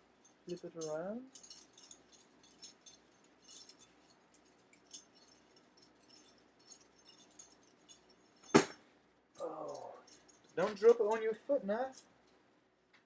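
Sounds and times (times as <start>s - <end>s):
knife dropped clack: 8.4s - 8.8s.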